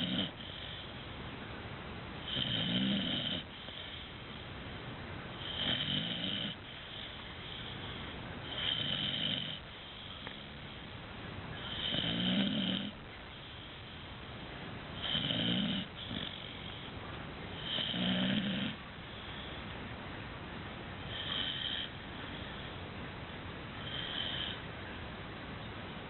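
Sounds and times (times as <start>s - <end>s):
puppy snoring: 0.0s - 1.0s, 2.2s - 4.2s, 5.4s - 10.8s, 11.6s - 13.7s, 15.0s - 16.9s, 17.5s - 19.5s, 21.0s - 22.7s, 23.8s - 24.6s.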